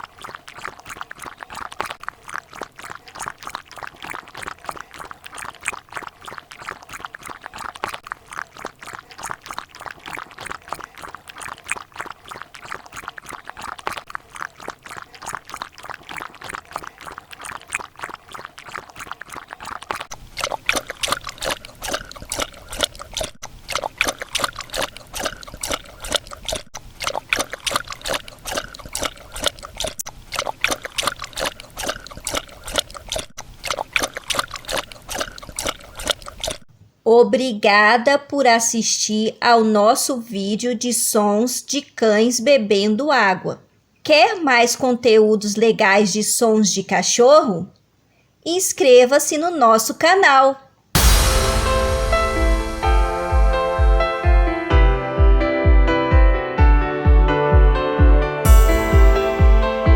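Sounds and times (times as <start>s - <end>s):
dog lapping water: 0.0s - 36.7s.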